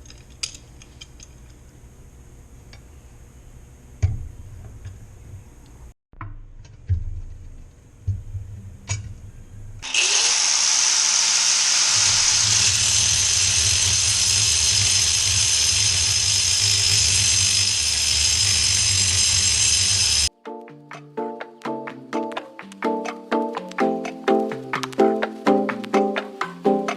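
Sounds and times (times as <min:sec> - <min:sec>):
power tool running: 0:09.8 - 0:20.3.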